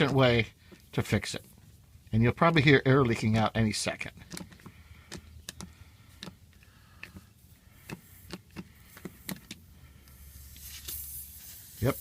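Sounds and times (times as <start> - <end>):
air hissing out of tire: 7.8 - 12.0.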